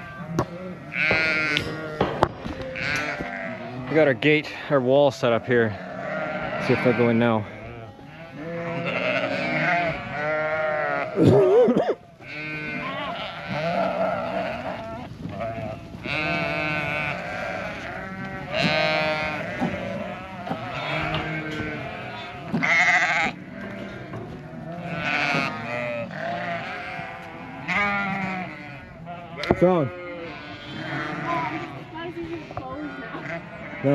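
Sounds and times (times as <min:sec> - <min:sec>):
sheep bleating: 0:00.0 - 0:04.6, 0:05.2 - 0:33.9.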